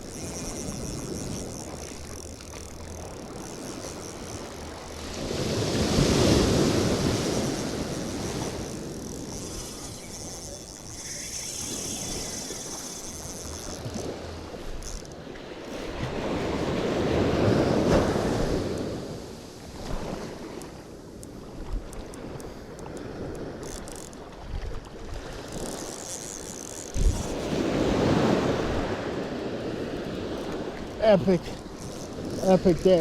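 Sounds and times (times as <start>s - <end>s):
surf washing up on beach: 4.7s - 9.0s
wind buffeting microphone: 21.4s - 33.0s.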